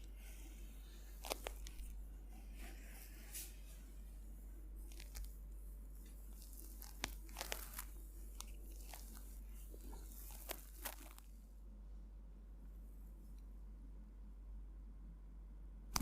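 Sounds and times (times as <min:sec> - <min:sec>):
sharp clicks and crackles: 0:01.2 - 0:02.0, 0:04.9 - 0:05.4, 0:06.0 - 0:11.3
hands rubbing skin: 0:06.0 - 0:11.2.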